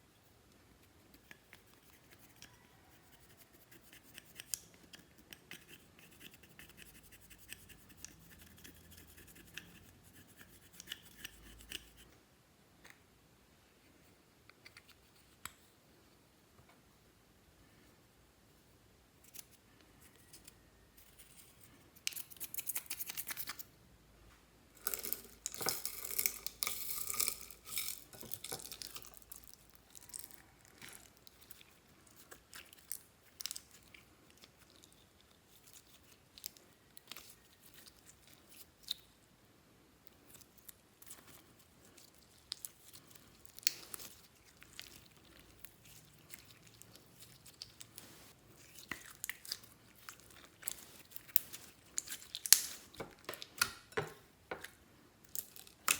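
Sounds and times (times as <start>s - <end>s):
slime crackling and popping: 24.8s - 31.6s, 42.2s - 47.9s, 48.6s - 53.8s.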